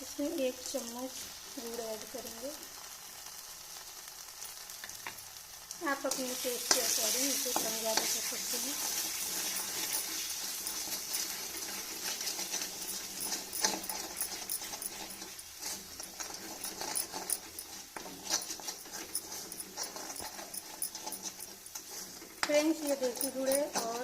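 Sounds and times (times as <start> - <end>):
paste sizzling in a pan: 0.0 - 24.0
spoon scraping and tapping pan: 6.7 - 8.2, 8.8 - 24.0.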